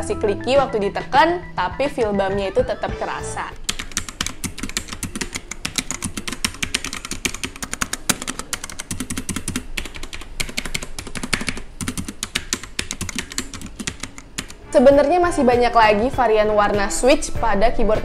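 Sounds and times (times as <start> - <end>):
typing on mechanical keyboard: 3.6 - 14.6.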